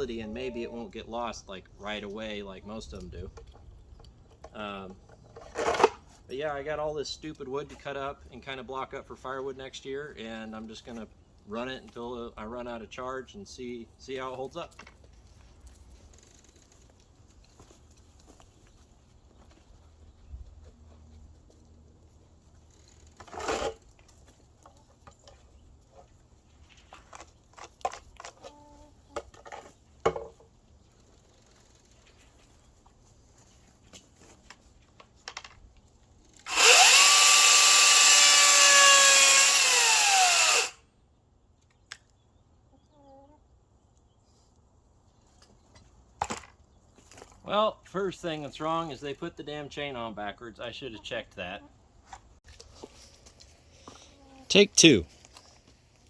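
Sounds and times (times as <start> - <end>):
battery chainsaw whine: 36.4 - 40.8.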